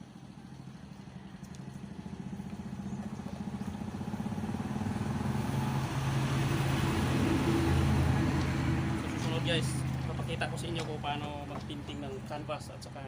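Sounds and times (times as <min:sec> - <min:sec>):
small motor vehicle engine running: 0:00.0 - 0:12.2.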